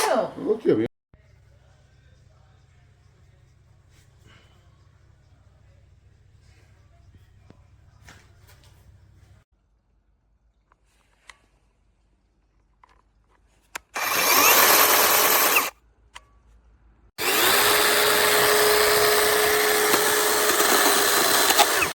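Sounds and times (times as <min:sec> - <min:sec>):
electric chainsaw motor whine: 0:14.0 - 0:15.7, 0:17.2 - 0:22.0.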